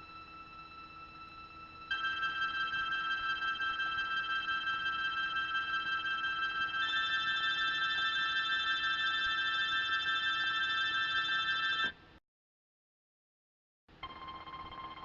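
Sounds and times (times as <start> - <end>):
high-pitched tone chord: 0.0 - 11.9.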